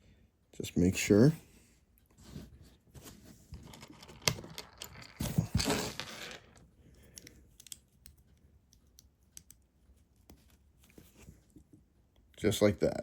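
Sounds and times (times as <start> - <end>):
plastic toy bricks clicking: 5.9 - 8.2.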